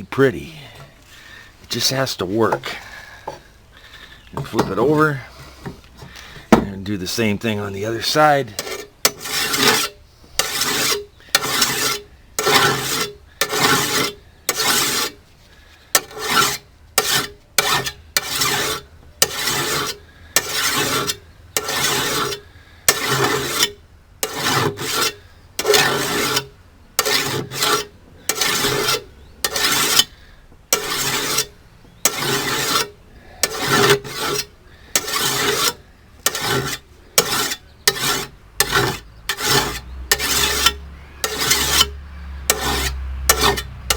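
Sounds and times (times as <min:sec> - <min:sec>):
file rasping on steel blade: 0:08.0 - 0:15.2, 0:16.0 - 0:43.9.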